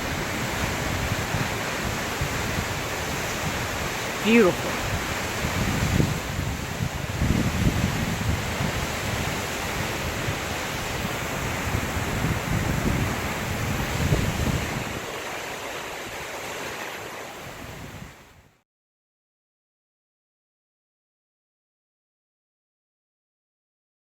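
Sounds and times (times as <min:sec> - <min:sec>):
wind buffeting microphone: 0:00.0 - 0:16.4, 0:17.3 - 0:18.5
waterfall rushing: 0:00.0 - 0:17.9.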